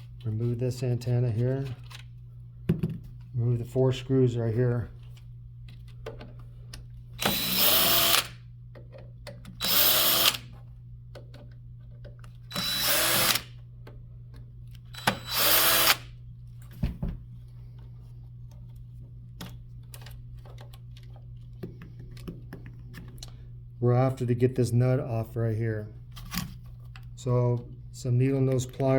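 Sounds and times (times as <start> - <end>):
power drill backing out screws: 14.9 - 16.0.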